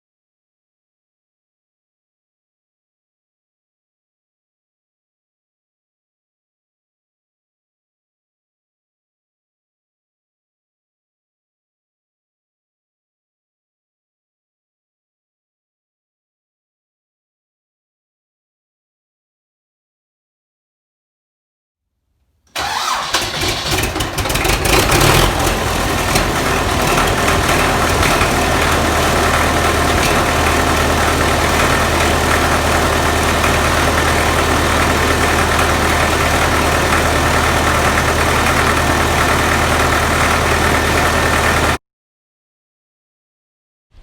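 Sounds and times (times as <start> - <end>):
tractor engine starting and idling: 22.5 - 41.8.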